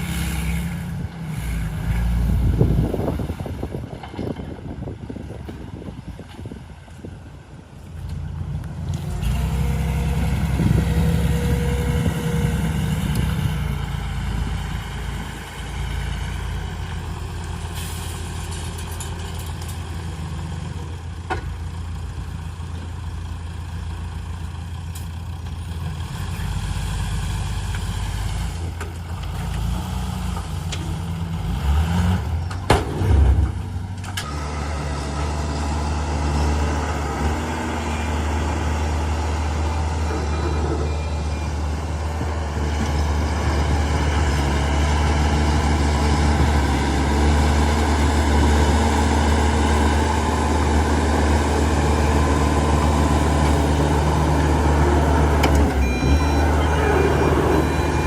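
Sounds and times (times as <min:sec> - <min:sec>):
heavy diesel engine running: 0:06.8 - 0:29.3, 0:30.2 - 0:58.0.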